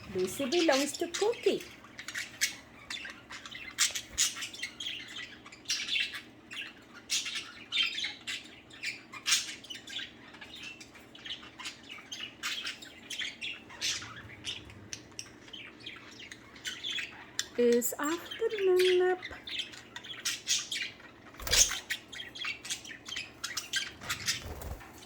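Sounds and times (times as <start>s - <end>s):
budgerigars chattering and chirping: 0.0s - 25.0s
scratchy squawks: 7.1s - 17.6s, 19.3s - 25.0s.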